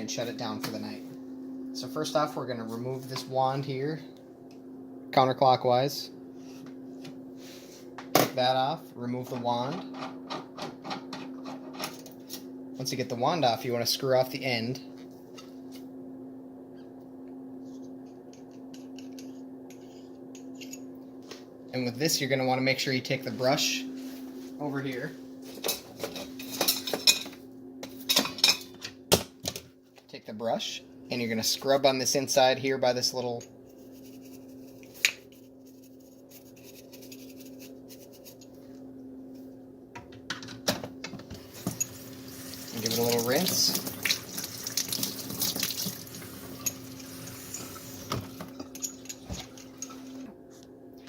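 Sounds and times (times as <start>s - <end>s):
steady low hum: 0.0s - 44.2s.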